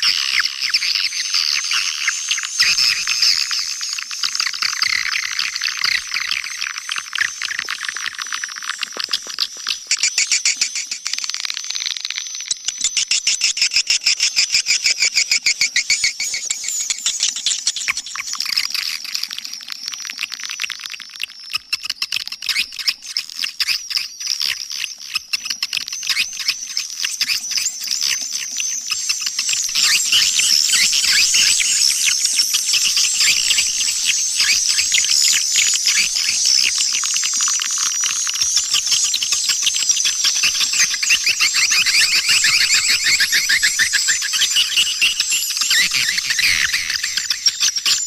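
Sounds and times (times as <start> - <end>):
bird twittering chirps and clicks: 0.0 - 48.0
thin steady high tone: 26.0 - 48.0.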